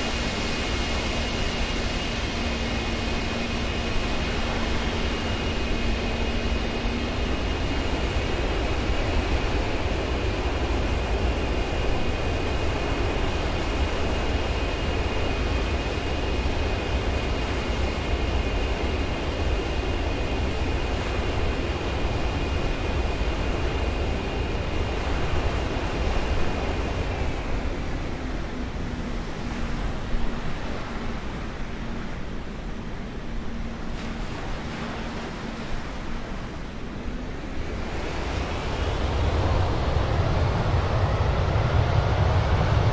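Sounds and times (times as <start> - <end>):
jet engines at takeoff thrust: 0.0 - 42.9
high jet whine: 31.0 - 42.9.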